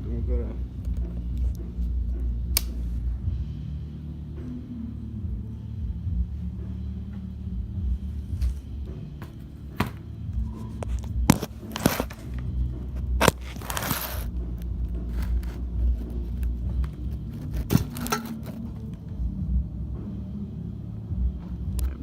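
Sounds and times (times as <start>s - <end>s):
camera handling clicks and rustle: 10.8s - 12.3s, 13.2s - 14.2s, 17.4s - 18.6s.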